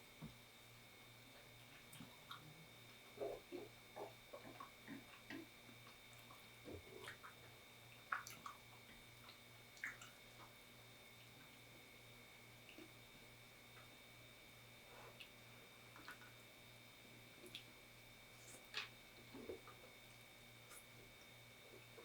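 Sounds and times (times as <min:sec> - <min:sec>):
faint steady hum: 0:00.0 - 0:22.0
chewing and wet mouth sounds: 0:01.4 - 0:11.7, 0:17.4 - 0:22.0.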